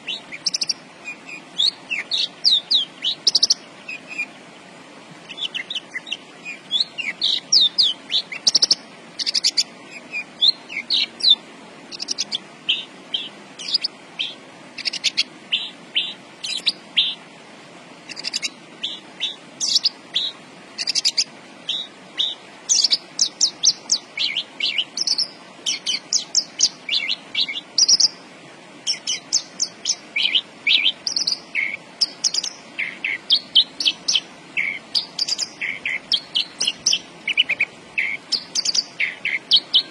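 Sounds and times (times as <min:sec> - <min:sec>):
lark singing: 0:00.0 - 0:04.3, 0:05.2 - 0:17.2, 0:18.1 - 0:28.2, 0:28.8 - 0:39.9.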